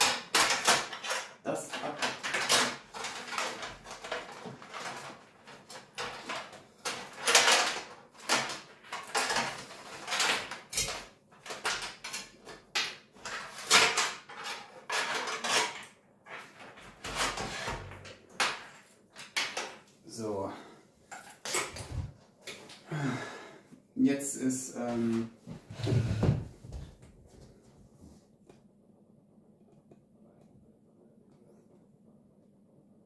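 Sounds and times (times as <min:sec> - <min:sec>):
clicks and clatter of computer parts: 0:00.0 - 0:20.0.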